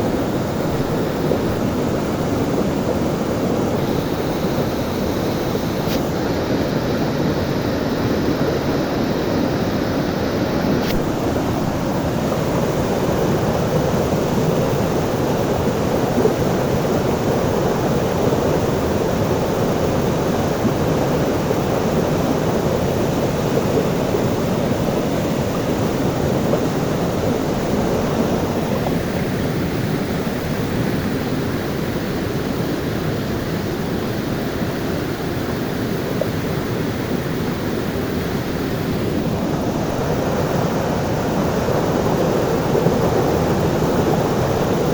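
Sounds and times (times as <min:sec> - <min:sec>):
waterfall roaring: 0:00.0 - 0:30.7.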